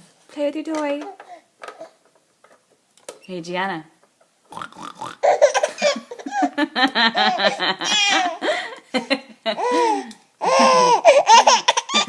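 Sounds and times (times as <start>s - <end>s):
baby laughing: 5.2s - 8.7s, 9.6s - 12.0s.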